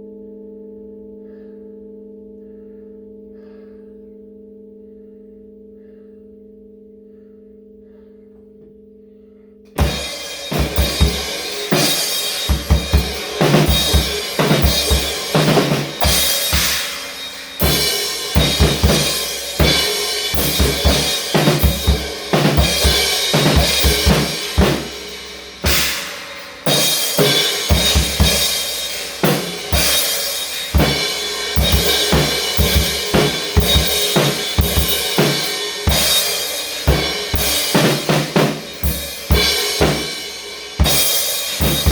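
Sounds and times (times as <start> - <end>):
music with drum kit beat: 9.8 - 41.9.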